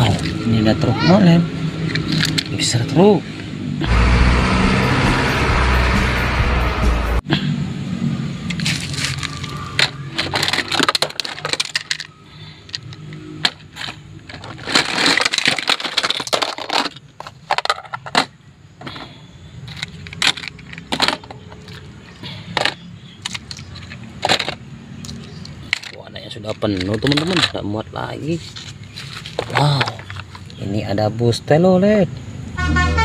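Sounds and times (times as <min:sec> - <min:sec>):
toy vehicles clattering together: 0:00.0 - 0:00.6, 0:01.8 - 0:02.8, 0:08.5 - 0:30.8.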